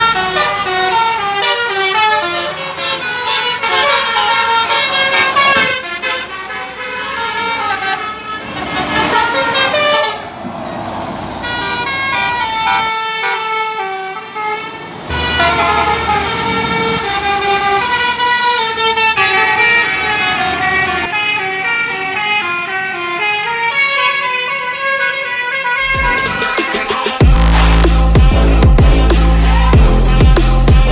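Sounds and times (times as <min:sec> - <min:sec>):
musical bus air horns: 0:00.0 - 0:10.4, 0:11.4 - 0:30.9
rushing noise: 0:08.4 - 0:12.9.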